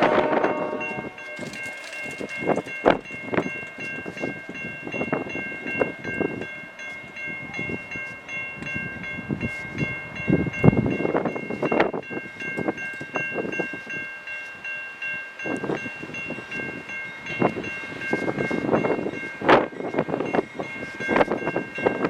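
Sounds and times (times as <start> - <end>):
train horn blast: 0.0 - 1.2
railway warning bell ringing: 0.0 - 22.0.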